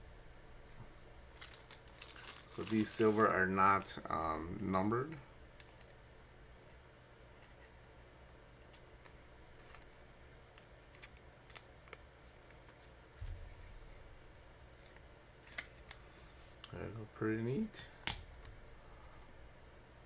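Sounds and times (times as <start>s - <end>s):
trading cards being handled: 1.3s - 6.0s, 8.5s - 13.6s.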